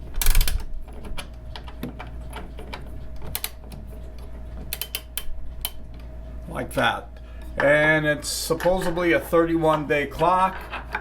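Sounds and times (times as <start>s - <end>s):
clock winding key ratchet clicks: 4.7s - 5.8s.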